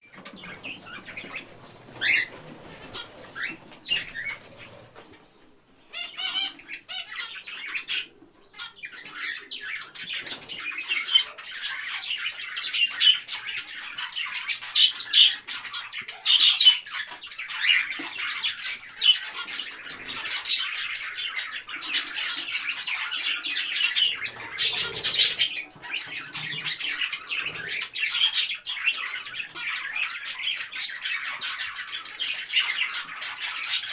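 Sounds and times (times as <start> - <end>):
parrot squawking: 5.9 - 9.8.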